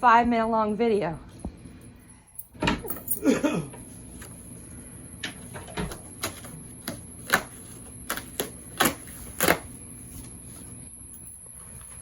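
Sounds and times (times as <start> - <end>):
cardboard package snaps and clicks: 6.2 - 9.7.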